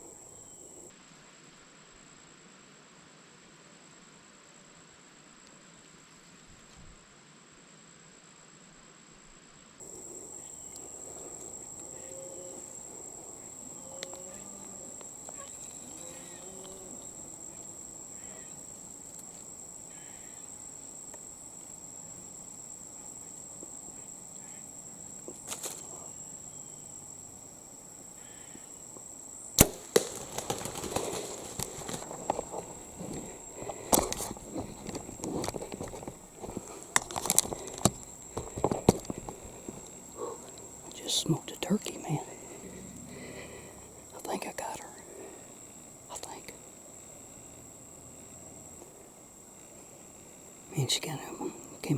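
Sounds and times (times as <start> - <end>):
high-pitched insect drone: 9.8 - 51.9.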